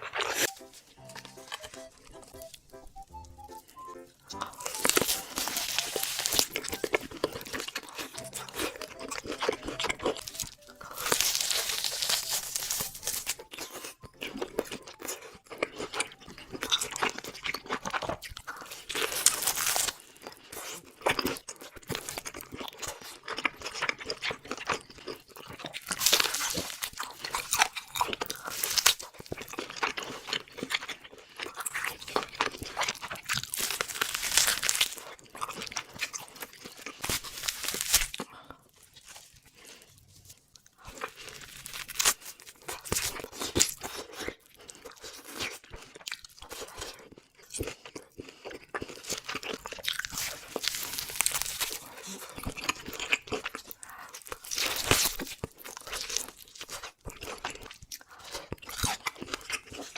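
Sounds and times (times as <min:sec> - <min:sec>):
crunchy food being chewed: 0:00.0 - 0:59.9.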